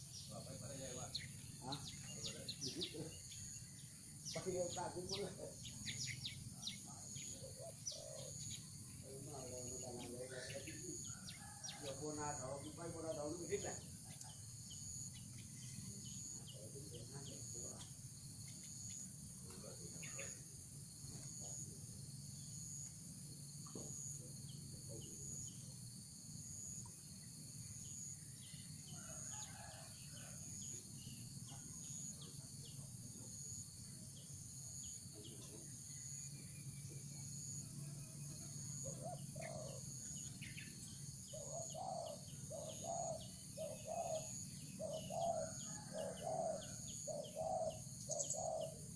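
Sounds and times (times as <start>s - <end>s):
insects trilling: 0.0s - 48.9s
dove cooing: 6.7s - 8.5s, 38.7s - 40.1s, 41.3s - 48.9s.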